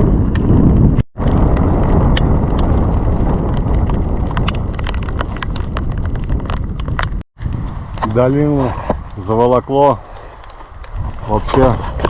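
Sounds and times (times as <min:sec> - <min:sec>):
wind buffeting microphone: 0:00.0 - 0:12.0
rain ticks and clicks: 0:01.2 - 0:08.0.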